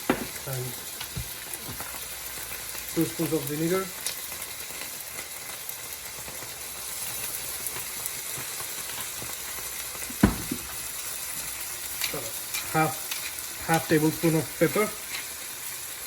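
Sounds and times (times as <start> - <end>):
sauce sizzling in a pan: 0.0 - 16.0
sharp knock: 0.1 - 0.4, 10.2 - 10.6.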